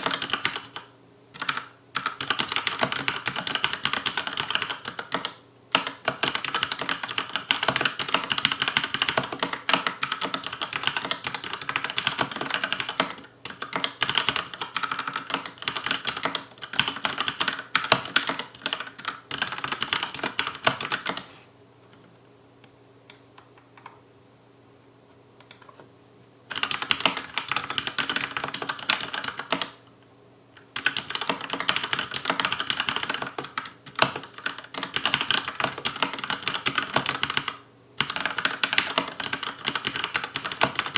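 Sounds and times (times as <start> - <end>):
mechanical keyboard typing: 0.0 - 21.3, 26.5 - 29.8, 30.6 - 40.9.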